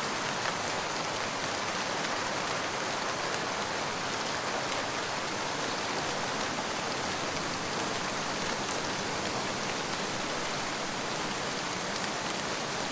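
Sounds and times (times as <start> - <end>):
steady rain hiss: 0.0 - 12.9.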